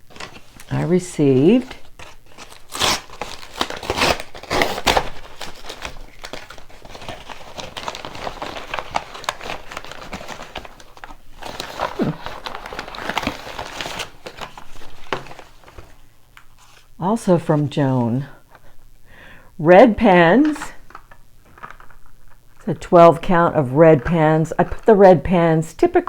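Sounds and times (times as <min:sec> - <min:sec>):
packaging crinkling and rustling: 0:00.0 - 0:16.9, 0:20.3 - 0:23.1.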